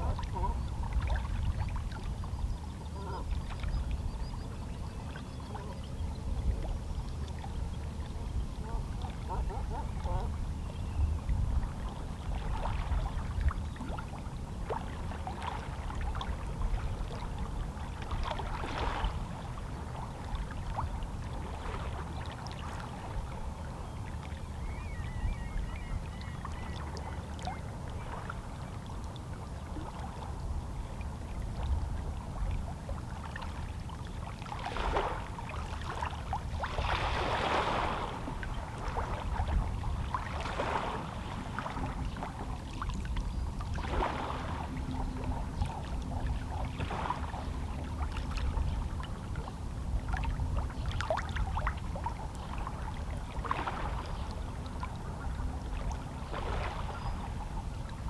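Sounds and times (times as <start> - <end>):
waves lapping against rocks: 34.4 - 49.4, 50.0 - 57.5.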